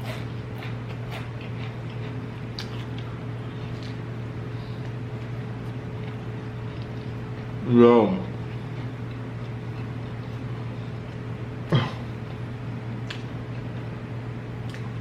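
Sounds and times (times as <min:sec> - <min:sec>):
chewing food with crunches: 0:00.0 - 0:04.1, 0:04.8 - 0:07.6, 0:08.2 - 0:11.3, 0:14.6 - 0:15.0
steady low hum: 0:00.0 - 0:15.0.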